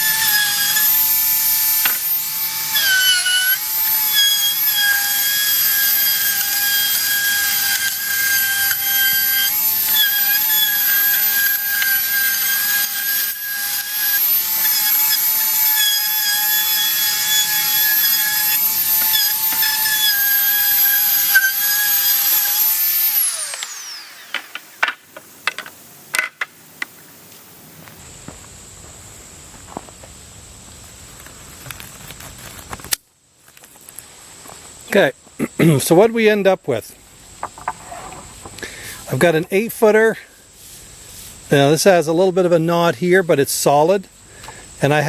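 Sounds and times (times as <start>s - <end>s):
router whining: 0.0s - 28.0s.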